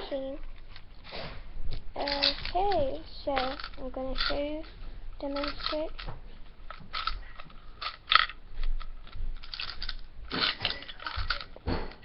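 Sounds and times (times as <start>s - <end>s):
gumball machine knob ratcheting clicks: 2.0s - 4.4s.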